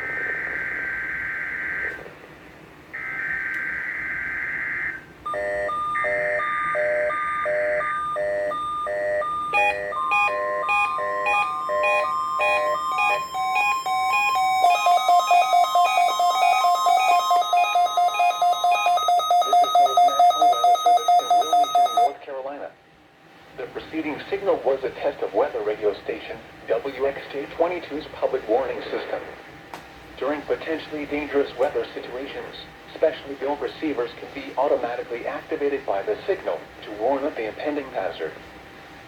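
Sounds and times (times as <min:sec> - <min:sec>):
warbling data bursts: 0:00.0 - 0:02.0, 0:09.6 - 0:22.2
rapid electronic alarm beeps: 0:03.0 - 0:22.2
steady alert tone: 0:05.3 - 0:22.2.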